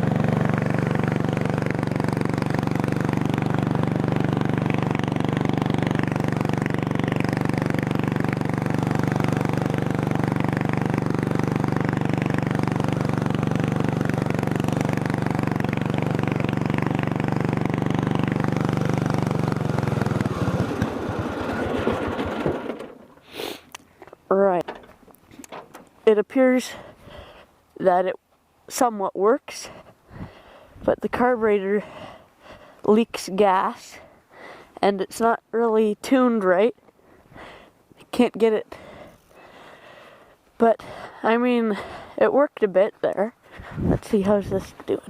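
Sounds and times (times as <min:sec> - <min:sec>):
lawn mower engine running and stalling: 0:00.0 - 0:26.1.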